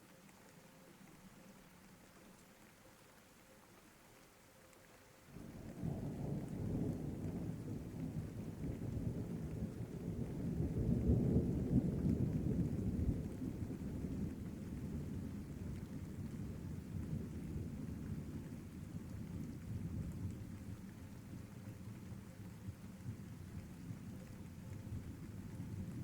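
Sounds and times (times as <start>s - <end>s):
steady rain: 0.0s - 26.0s
rolling thunder: 5.4s - 21.4s.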